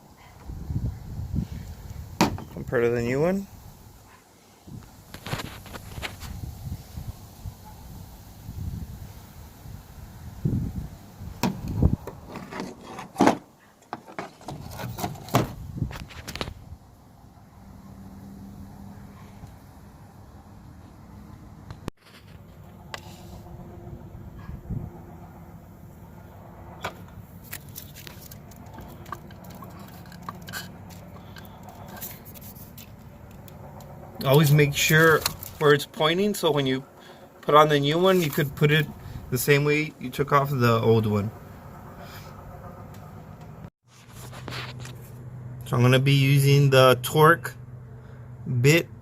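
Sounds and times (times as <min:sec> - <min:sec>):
sharp clicks and knocks of parts: 0:26.8 - 0:34.0.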